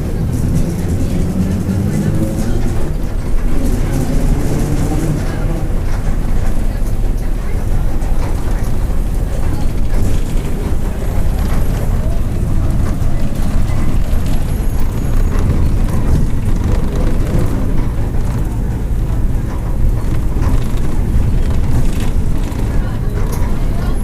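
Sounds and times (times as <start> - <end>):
bus diesel engine rumble: 0.0 - 24.0
driveshaft growl: 0.0 - 24.0.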